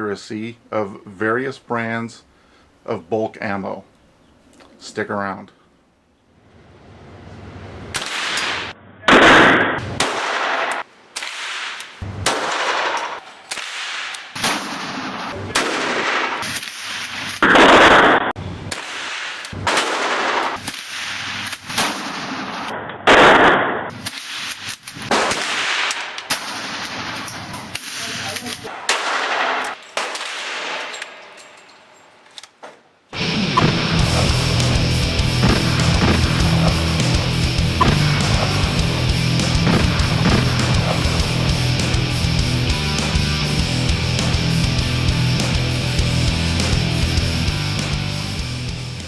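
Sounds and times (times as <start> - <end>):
gunshots and rapid fire: 8.0 - 27.8, 33.6 - 42.4.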